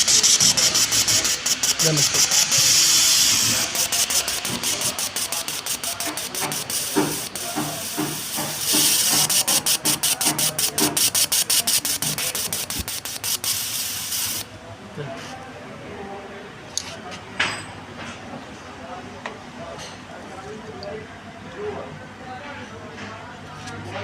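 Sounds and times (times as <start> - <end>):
loud hiss of spray: 0.0 - 14.5.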